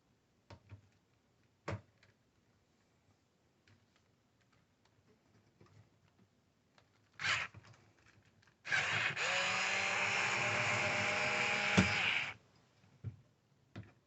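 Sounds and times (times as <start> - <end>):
electric screwdriver whirring: 7.2 - 7.5, 8.7 - 12.4.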